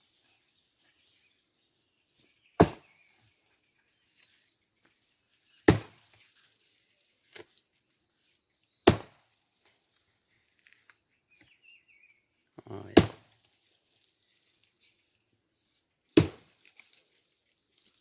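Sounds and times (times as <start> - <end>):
insects buzzing: 0.0 - 18.0
axe chopping wood: 2.6 - 2.9, 5.7 - 6.1, 8.8 - 9.2, 13.0 - 13.3, 16.2 - 16.5.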